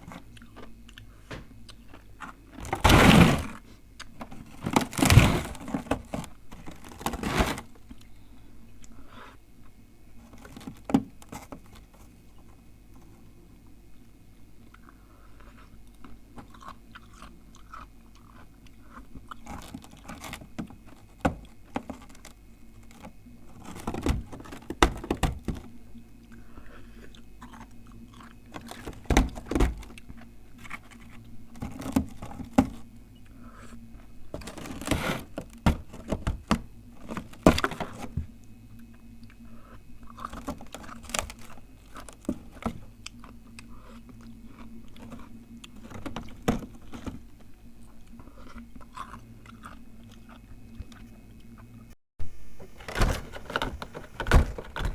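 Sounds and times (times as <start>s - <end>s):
ice being chewed crunching: 0.0s - 2.5s, 14.7s - 22.3s, 26.2s - 29.0s, 38.7s - 51.7s.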